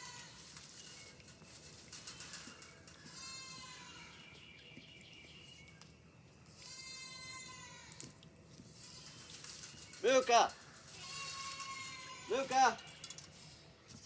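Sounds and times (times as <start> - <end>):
goat bleating: 6.6 - 8.0, 11.0 - 12.8.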